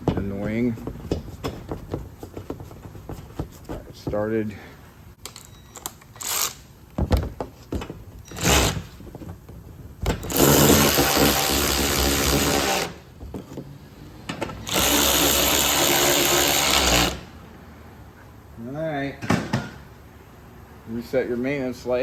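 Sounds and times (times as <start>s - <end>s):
power drill driving fasteners: 5.2s - 6.7s, 8.2s - 8.8s, 10.1s - 13.0s, 14.6s - 17.2s.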